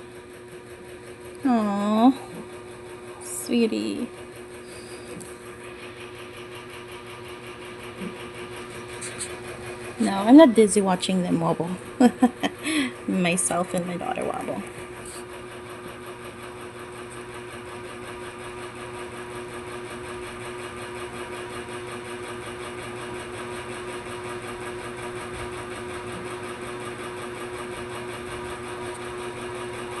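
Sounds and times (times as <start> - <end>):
small motor buzzing: 1.4 - 15.3.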